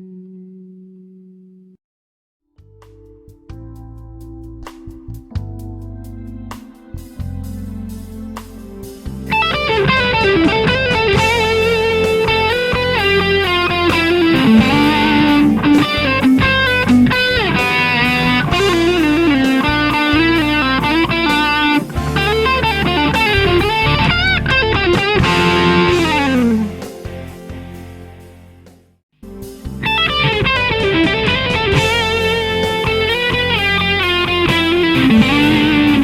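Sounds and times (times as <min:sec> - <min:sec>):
electric guitar lead melody: 0:02.6 - 0:36.0.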